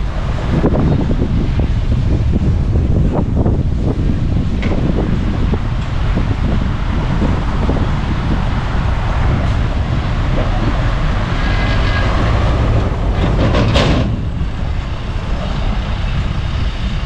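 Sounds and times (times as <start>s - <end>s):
heavy diesel machinery rumble: 0.0s - 17.0s
faint squealing: 11.3s - 12.8s
metal clanks: 11.5s - 14.4s.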